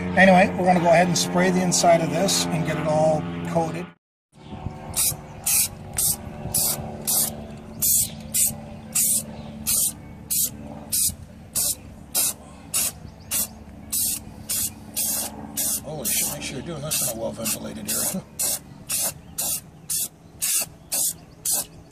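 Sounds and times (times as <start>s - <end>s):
aerosol can spraying: 5.0s - 21.8s.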